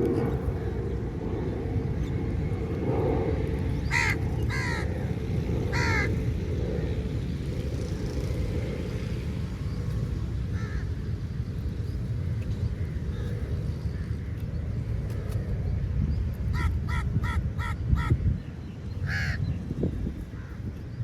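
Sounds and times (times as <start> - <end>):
steady low rumble: 0.0 - 21.0
crow cawing: 3.9 - 4.9, 5.7 - 6.2, 10.6 - 10.9, 19.0 - 19.4.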